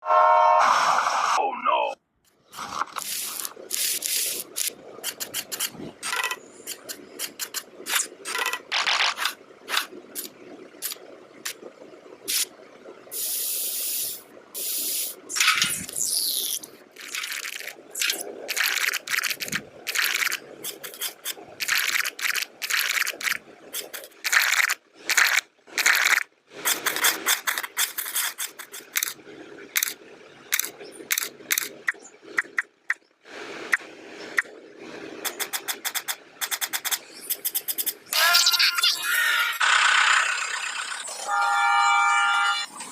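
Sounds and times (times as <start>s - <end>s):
steady hiss: 2.6s - 5.8s, 13.2s - 15.4s
hands scraping and clicking materials: 2.9s - 11.0s, 16.5s - 29.2s, 35.3s - 38.0s.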